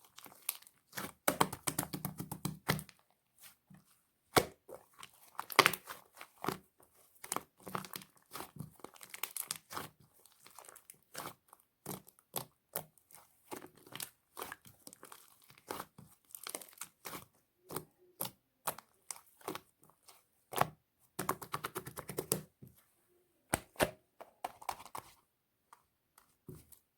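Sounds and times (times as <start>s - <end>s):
slime crackling and popping: 5.4s - 6.0s, 7.2s - 12.8s, 13.5s - 17.3s.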